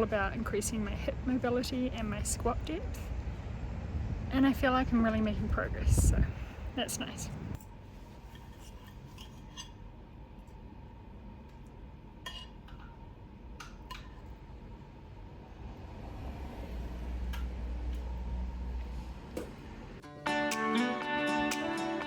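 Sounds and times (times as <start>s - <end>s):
low rumble: 0.0s - 7.6s.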